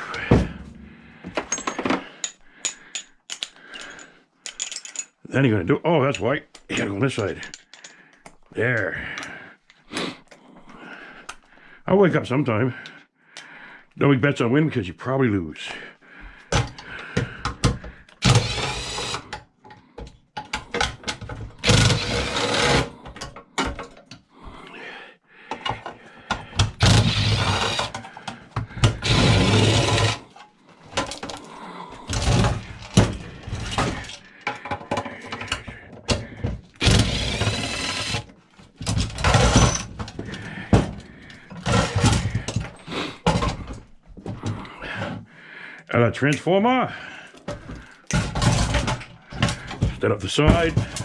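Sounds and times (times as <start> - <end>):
metal parts clicking and knocking: 1.2 - 5.2, 6.0 - 8.5, 16.5 - 24.2, 25.5 - 43.9, 47.3 - 51.0
drill-driver running in bursts: 18.2 - 19.2, 21.6 - 22.9, 26.8 - 27.9, 29.0 - 30.2, 36.8 - 38.3.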